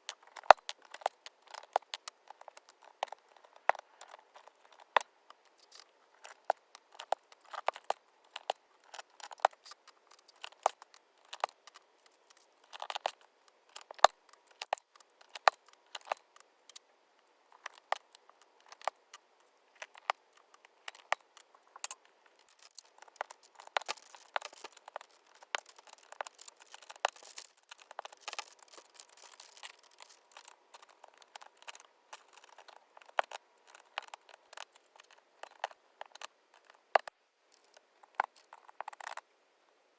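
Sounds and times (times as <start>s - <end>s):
keycaps clicking and clattering: 20.8s - 36.7s.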